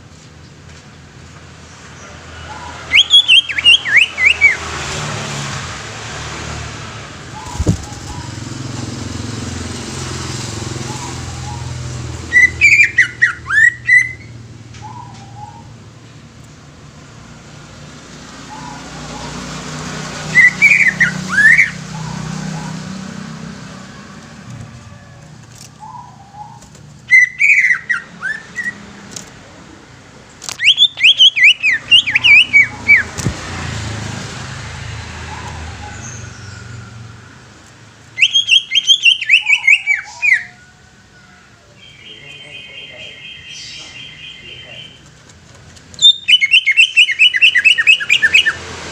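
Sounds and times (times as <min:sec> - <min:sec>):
bird singing whistled notes: 0:02.9 - 0:04.6, 0:10.9 - 0:15.8, 0:20.3 - 0:21.8, 0:25.8 - 0:28.8, 0:30.6 - 0:33.1, 0:38.2 - 0:40.5, 0:41.8 - 0:45.0, 0:46.0 - 0:48.6.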